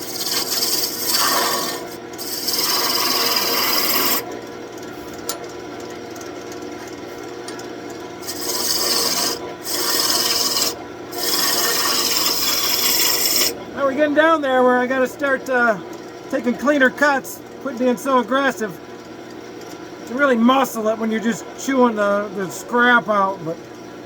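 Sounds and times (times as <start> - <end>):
lathe tool rasping on wood: 0.0 - 4.3, 8.2 - 14.1
lathe humming: 0.0 - 24.0.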